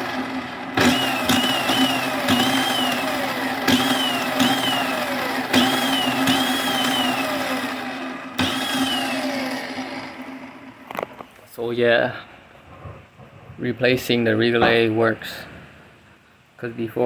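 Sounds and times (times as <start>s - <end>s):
electric motor whine: 0.0s - 11.0s.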